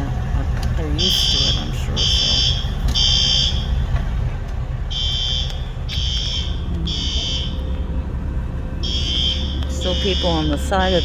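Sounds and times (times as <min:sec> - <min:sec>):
fire alarm horns buzzing: 0:00.0 - 0:04.2, 0:04.8 - 0:11.0
steady low rumble: 0:00.0 - 0:11.0.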